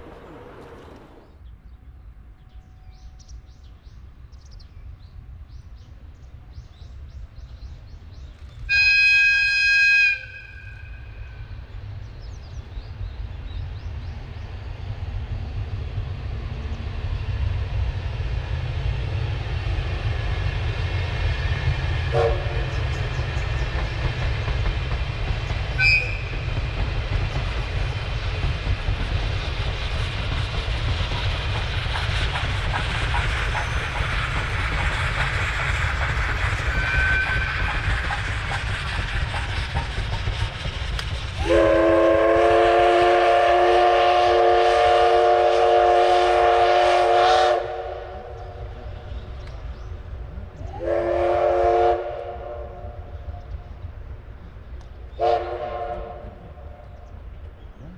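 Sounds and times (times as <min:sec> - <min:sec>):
train passing with wheels clicking: 0:00.0 - 0:57.9
train whistle toots: 0:08.7 - 0:11.4, 0:22.0 - 0:23.0, 0:25.8 - 0:26.5, 0:36.6 - 0:38.0, 0:41.4 - 0:48.4, 0:50.6 - 0:53.0, 0:55.1 - 0:56.8.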